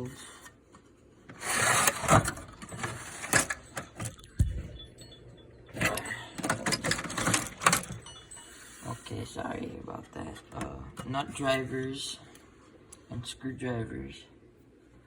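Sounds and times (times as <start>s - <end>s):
metal tools clattering: 1.5s - 9.0s.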